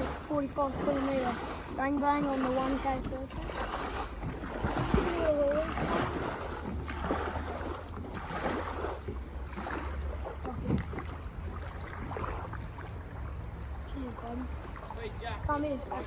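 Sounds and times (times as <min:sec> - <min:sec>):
wind rumbling on microphone: 0:02.4 - 0:14.6
faint crackles and knocks: 0:08.9 - 0:12.8.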